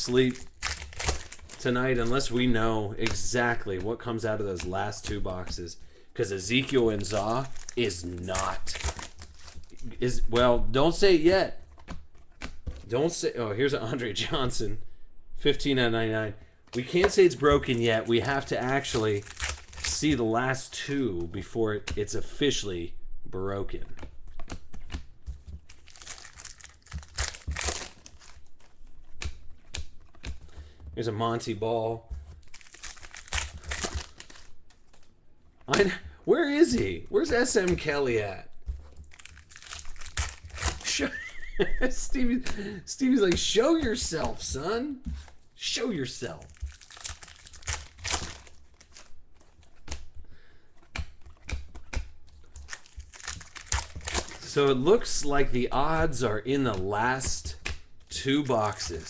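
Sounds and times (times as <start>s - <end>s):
wrappers crinkling and tearing: 0.0s - 3.4s, 6.4s - 10.2s, 18.3s - 20.2s, 25.5s - 30.2s, 32.3s - 35.1s, 36.7s - 42.4s, 46.1s - 50.1s, 51.2s - 55.3s
trading cards being flipped: 0.0s - 5.6s, 6.4s - 10.5s, 24.3s - 30.5s, 32.2s - 35.9s, 36.6s - 41.0s, 46.2s - 50.2s, 50.8s - 59.0s
cards clicking and sliding: 32.3s - 35.1s.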